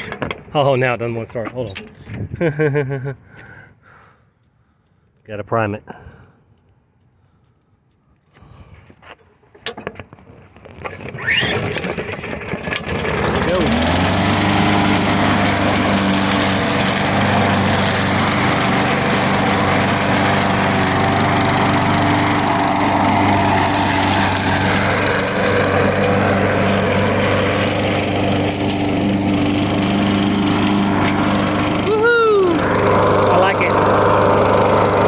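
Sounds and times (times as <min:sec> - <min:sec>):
lawn mower engine running: 0:10.7 - 0:35.0.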